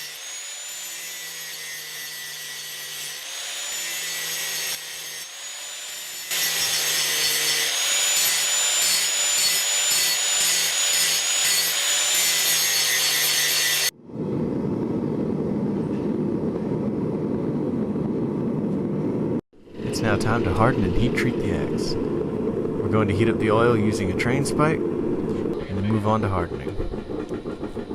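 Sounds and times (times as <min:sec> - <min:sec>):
power grinder on steel: 0:00.0 - 0:13.9
low rushing noise: 0:14.0 - 0:27.9.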